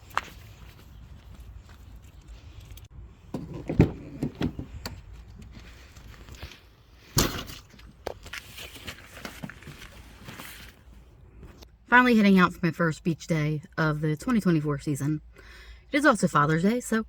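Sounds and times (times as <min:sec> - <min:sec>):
knocks and thumps of handling: 0:03.3 - 0:06.5.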